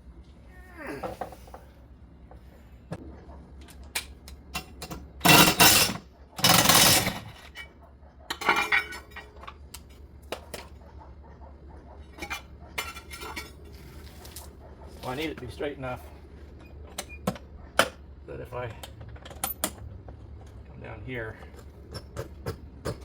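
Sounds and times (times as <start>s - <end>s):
metal clinking and knocking: 4.6s - 9.6s.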